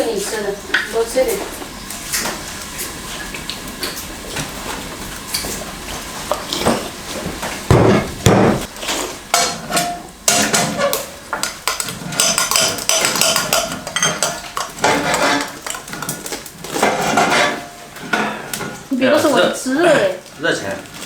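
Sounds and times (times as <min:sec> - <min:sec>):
heavier knocks: 0:07.7 - 0:08.7
spoons clinking against bowls: 0:09.3 - 0:18.7.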